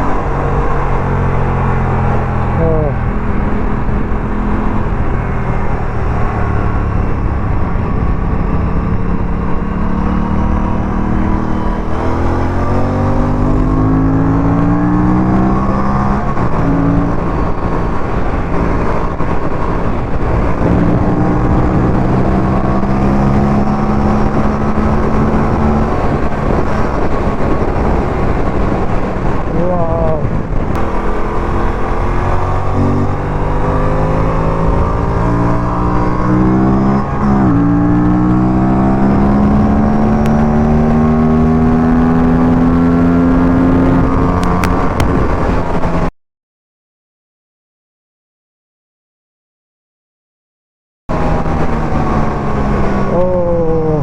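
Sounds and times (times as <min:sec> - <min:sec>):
motorcycle engine revving: 0:00.0 - 0:46.1
steady rush of noise: 0:00.0 - 0:46.1.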